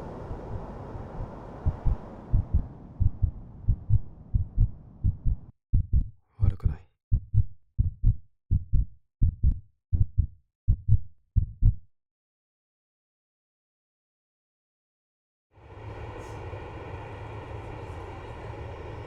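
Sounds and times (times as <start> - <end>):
heartbeat thumping: 1.6 - 11.9.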